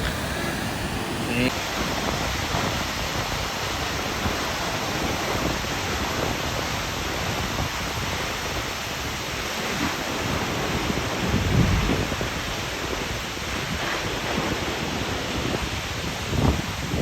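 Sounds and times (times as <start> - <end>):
waterfall rushing: 0.0 - 1.5
wind buffeting microphone: 0.0 - 1.5.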